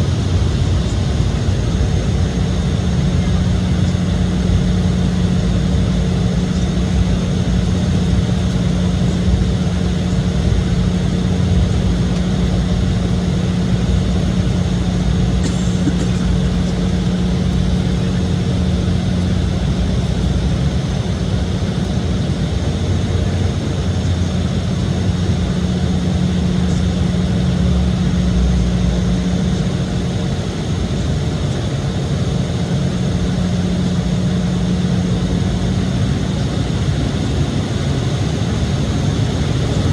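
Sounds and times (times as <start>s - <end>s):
constant low hum: 0.0s - 39.9s
jet cabin engine drone: 0.0s - 39.9s.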